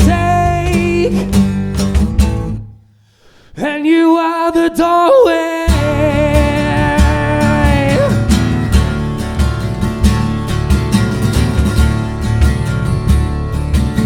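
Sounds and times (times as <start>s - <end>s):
person singing with vibrato: 0.0s - 1.7s, 3.5s - 9.4s
acoustic guitar strumming: 0.0s - 3.0s, 5.6s - 14.0s.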